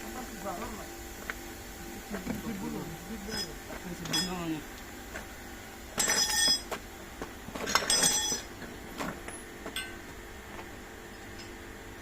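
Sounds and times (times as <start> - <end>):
metal tools clinking: 3.3 - 4.4, 6.0 - 6.7, 7.7 - 8.5.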